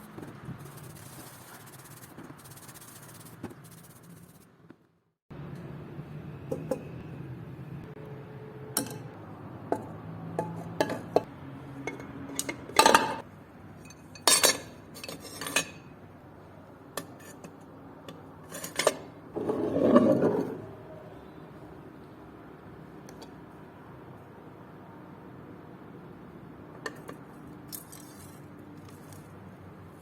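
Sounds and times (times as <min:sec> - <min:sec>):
metal parts clinking: 0:27.7 - 0:29.2.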